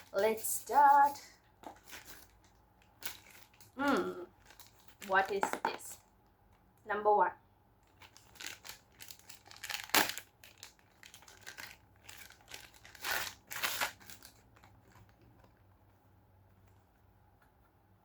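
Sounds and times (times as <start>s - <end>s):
packaging crinkling and tearing: 0.0s - 5.4s, 7.8s - 15.6s.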